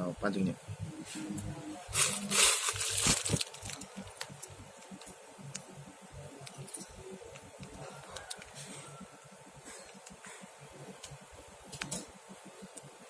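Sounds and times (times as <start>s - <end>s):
fishing tackle rustling: 1.9s - 4.5s.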